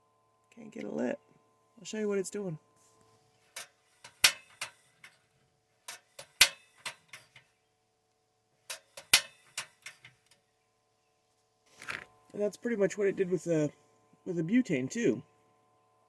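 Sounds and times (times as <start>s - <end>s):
stove igniter clicking: 3.6s - 5.2s, 5.9s - 7.4s, 8.7s - 10.4s.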